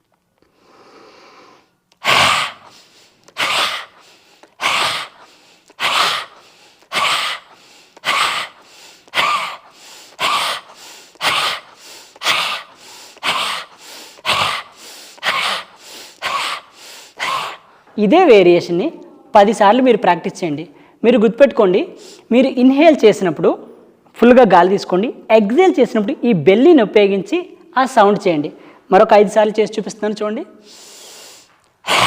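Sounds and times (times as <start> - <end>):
person forcefully exhaling: 0.6 - 17.8, 30.7 - 32.0.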